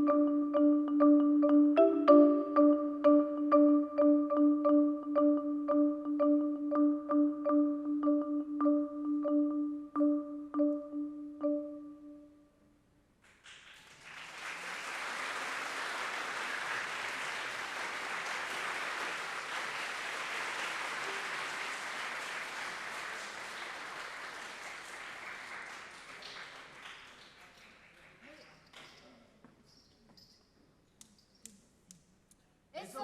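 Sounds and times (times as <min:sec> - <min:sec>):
marimba note ringing: 0:00.0 - 0:12.3
audience applauding: 0:13.3 - 0:29.0.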